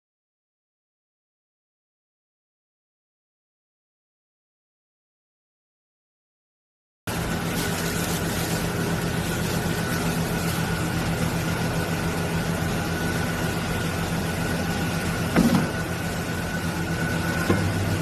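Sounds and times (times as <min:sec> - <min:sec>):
meat grinder motor running: 0:07.1 - 0:18.0.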